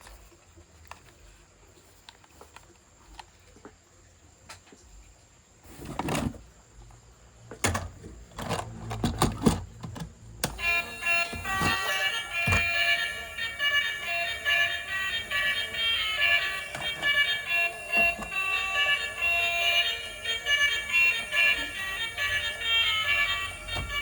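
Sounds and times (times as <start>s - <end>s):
plastic toys clicking and rattling: 8.4s - 24.0s
toy tune: 10.4s - 24.0s
tinny electronic beeping melody: 10.6s - 24.0s.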